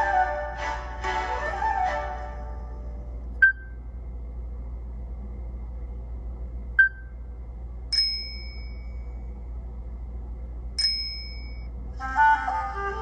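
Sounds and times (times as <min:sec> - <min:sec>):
woodwind-like melody: 0:00.0 - 0:03.1, 0:12.0 - 0:13.0
bell-like ringtone dings: 0:08.0 - 0:08.9, 0:10.8 - 0:11.7.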